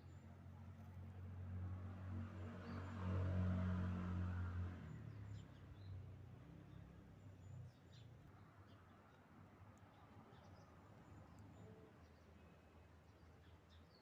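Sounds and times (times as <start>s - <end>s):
vehicle passing by: 1.4s - 4.9s.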